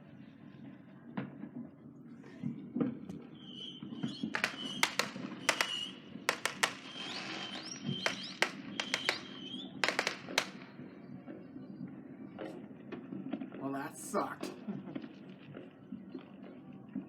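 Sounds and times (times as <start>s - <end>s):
fireworks whistling: 2.1s - 11.2s
fireworks cracking and popping: 2.2s - 11.4s.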